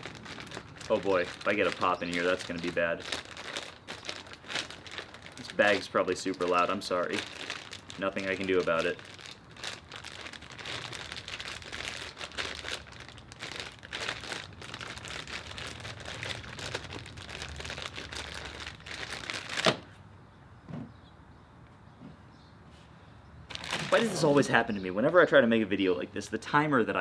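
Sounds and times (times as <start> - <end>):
plastic bag crinkling: 0.0 - 19.9, 23.5 - 24.7.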